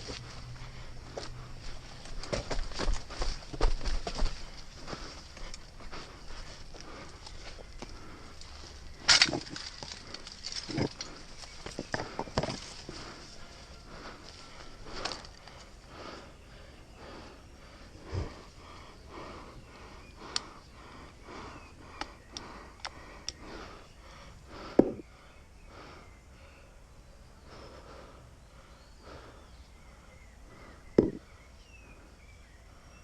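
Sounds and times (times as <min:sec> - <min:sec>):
movement noises: 0:00.0 - 0:25.0
breathing: 0:00.1 - 0:33.0
short thumps: 0:24.8 - 0:25.0, 0:31.0 - 0:31.2.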